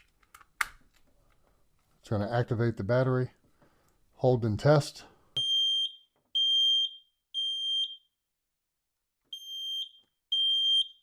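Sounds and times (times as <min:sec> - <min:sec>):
smoke detector beeping: 0:05.4 - 0:08.0, 0:09.4 - 0:11.0.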